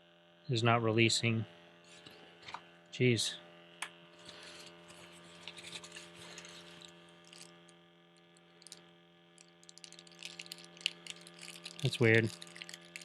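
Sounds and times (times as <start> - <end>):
faint electrical hum: 0.0 - 13.0
plastic parts clicking and rattling: 4.4 - 7.6, 8.5 - 8.8, 9.4 - 13.0.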